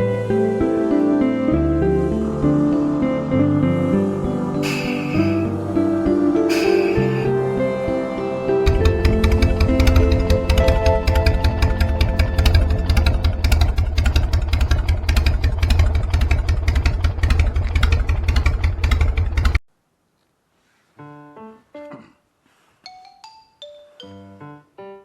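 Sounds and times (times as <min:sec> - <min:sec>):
quiet piano-like notes: 0:00.0 - 0:13.6
music with heavy bass: 0:04.6 - 0:05.6, 0:06.4 - 0:07.4, 0:08.6 - 0:13.4.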